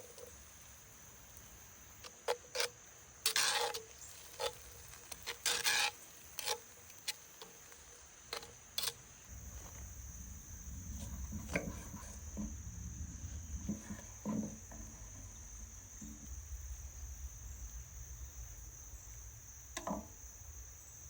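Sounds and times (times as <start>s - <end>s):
low rumble: 9.3s - 20.8s.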